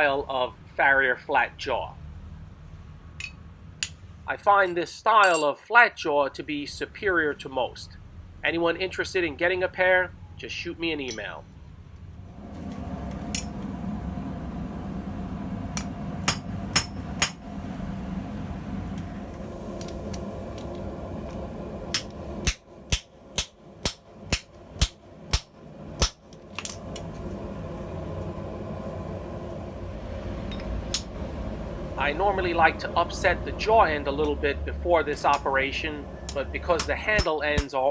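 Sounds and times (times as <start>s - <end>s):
hammer ringing on anvil: 4.6s - 5.6s, 36.8s - 37.8s
steady low rumble: 12.2s - 37.7s.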